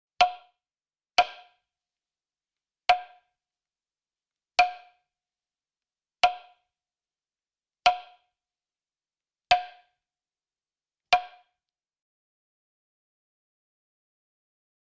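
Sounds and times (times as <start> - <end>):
hollow wood block knocks: 0.2 - 0.5, 2.9 - 3.3, 4.6 - 5.0, 6.2 - 6.6, 7.9 - 8.2, 11.1 - 11.5.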